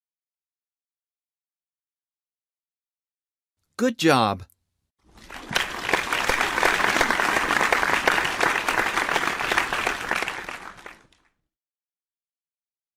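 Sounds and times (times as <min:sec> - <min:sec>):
crowd applause: 0:05.1 - 0:11.3.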